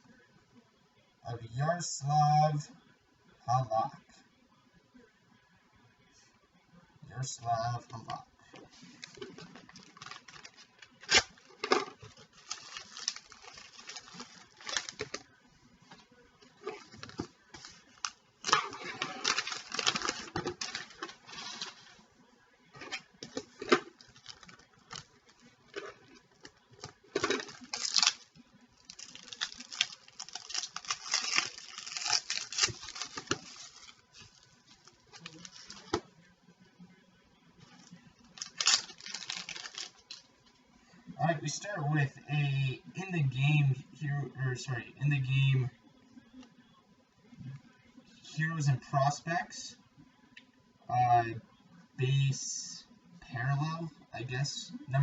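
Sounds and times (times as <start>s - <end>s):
wrappers crinkling and tearing: 8.1s - 15.3s, 15.9s - 22.0s, 22.8s - 36.0s, 37.6s - 40.3s.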